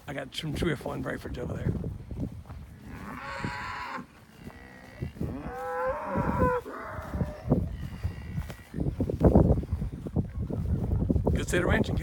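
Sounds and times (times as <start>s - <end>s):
cattle mooing: 2.8s - 8.8s.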